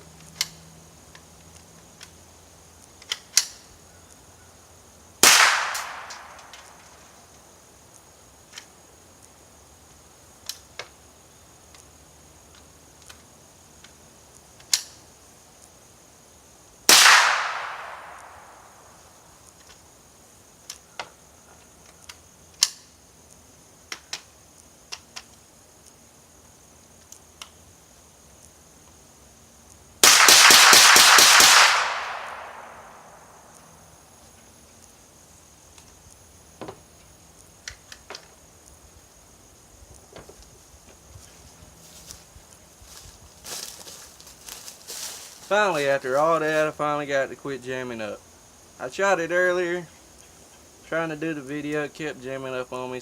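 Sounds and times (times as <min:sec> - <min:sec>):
rifle shots echoing: 0:05.2 - 0:06.8, 0:16.9 - 0:18.8, 0:30.0 - 0:33.3.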